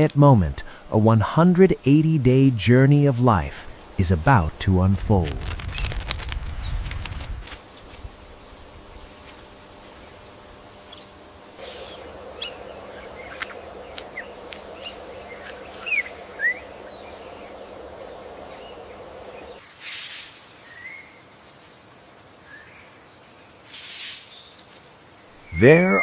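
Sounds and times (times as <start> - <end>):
outdoor ambience: 0.0 - 26.0
bird chirps: 10.9 - 19.6.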